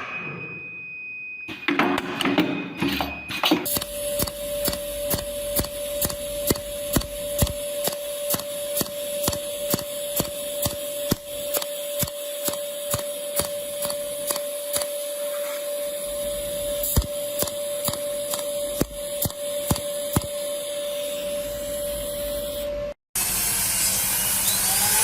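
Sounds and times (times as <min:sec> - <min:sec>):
regular mechanical clicks: 0:03.7 - 0:15.0, 0:16.8 - 0:20.4
machine whining: 0:03.7 - 0:25.0.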